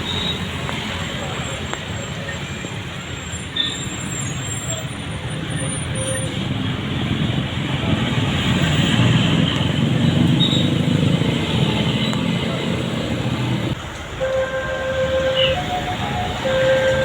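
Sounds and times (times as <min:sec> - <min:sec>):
bus passing with loud engine: 0:00.0 - 0:17.0
musical air horn: 0:14.2 - 0:17.0.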